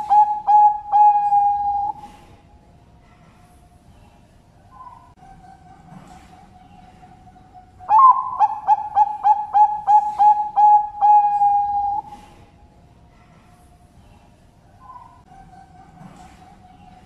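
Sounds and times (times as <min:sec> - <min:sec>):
dove cooing: 0:00.0 - 0:02.4, 0:05.9 - 0:12.3.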